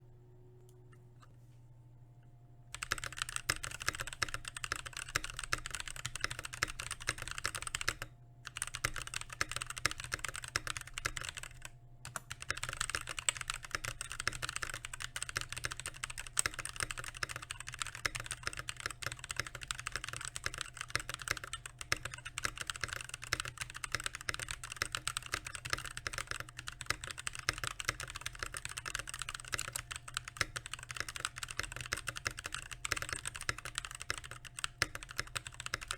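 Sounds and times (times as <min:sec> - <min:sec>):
mechanical keyboard typing: 0:02.7 - 0:35.9.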